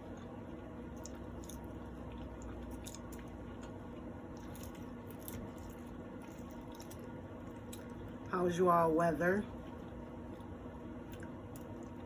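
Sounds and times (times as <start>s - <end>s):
person chewing: 0.0s - 8.2s, 9.6s - 12.0s.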